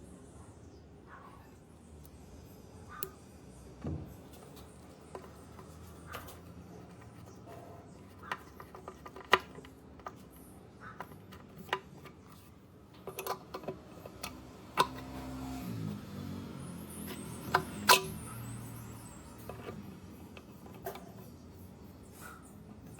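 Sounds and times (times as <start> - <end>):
metal tools clicking and clinking: 17.0 - 21.3.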